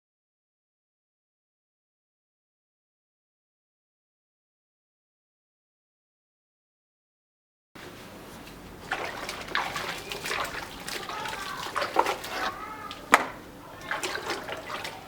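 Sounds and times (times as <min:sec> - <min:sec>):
faint background voice: 0:09.6 - 0:15.0.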